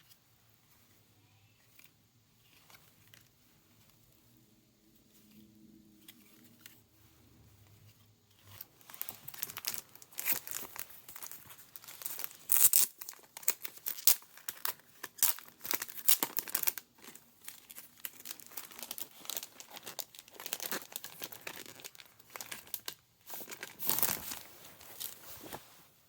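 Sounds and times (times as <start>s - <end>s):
packaging crinkling and tearing: 8.5s - 25.6s.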